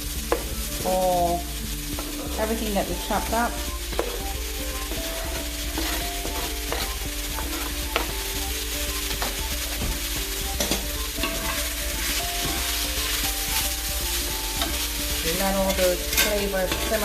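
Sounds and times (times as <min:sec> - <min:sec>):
food sizzling in a skillet: 0:00.0 - 0:17.0
utensil knocking against pan: 0:03.9 - 0:04.4, 0:05.3 - 0:08.3, 0:10.6 - 0:12.7.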